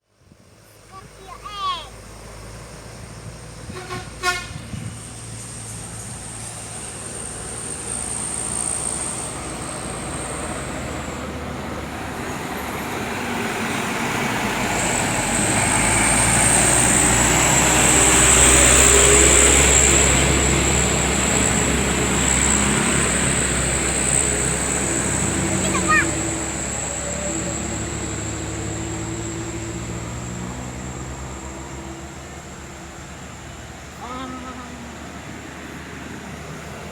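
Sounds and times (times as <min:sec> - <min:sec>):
bus engine and road noise: 0:00.0 - 0:36.9.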